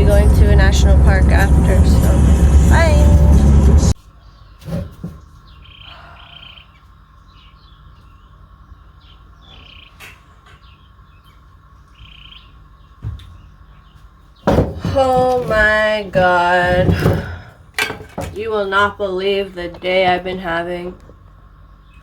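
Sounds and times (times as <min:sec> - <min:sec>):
loud noise: 0:00.0 - 0:04.0
birds chirping: 0:00.0 - 0:17.5, 0:18.4 - 0:22.0
faint background hum: 0:00.0 - 0:22.0.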